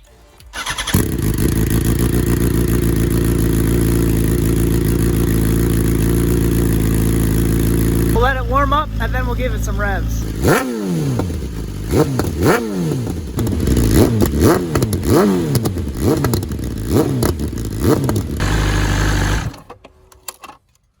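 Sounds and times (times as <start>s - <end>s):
motorcycle engine revving and idling: 0.5s - 19.8s.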